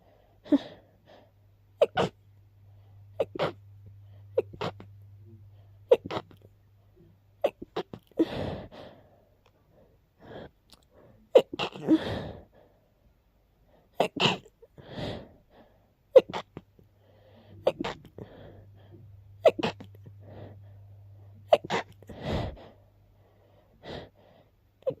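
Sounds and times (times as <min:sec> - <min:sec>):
person sneezing: 0:01.8 - 0:02.2, 0:03.2 - 0:03.6, 0:04.4 - 0:04.9, 0:05.9 - 0:06.5, 0:11.4 - 0:12.4, 0:14.0 - 0:14.5, 0:16.2 - 0:16.7, 0:17.6 - 0:18.4, 0:19.4 - 0:20.1, 0:21.5 - 0:22.5.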